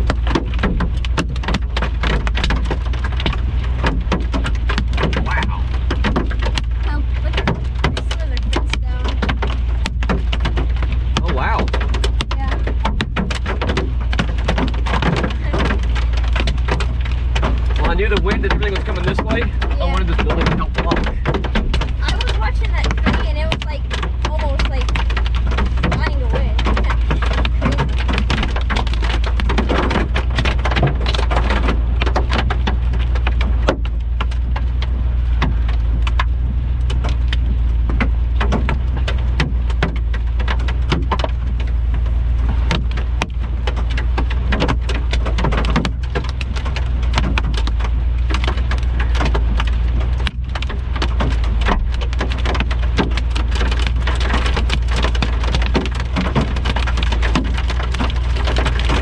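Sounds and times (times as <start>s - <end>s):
low rumble: 0.0s - 59.0s
rain pelting on a vehicle: 0.0s - 59.0s.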